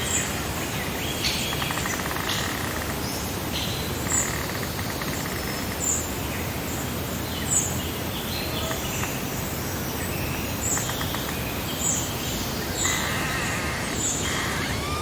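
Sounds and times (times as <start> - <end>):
birds singing: 0.0 - 15.0
breeze: 9.7 - 15.0.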